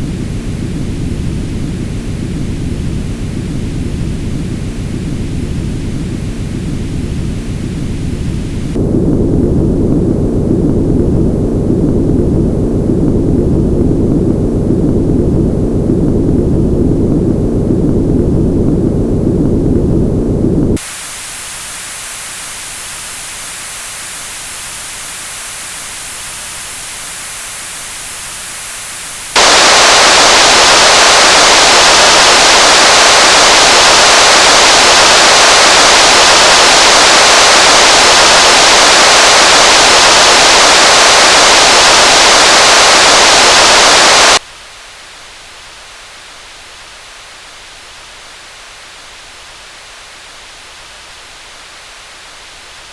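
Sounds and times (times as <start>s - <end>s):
white noise: 0.0s - 52.9s
thin synthesized hiss: 20.8s - 44.4s.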